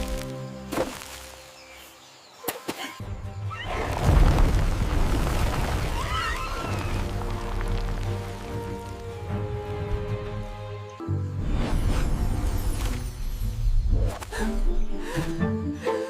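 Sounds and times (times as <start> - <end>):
background music: 6.4 - 16.0.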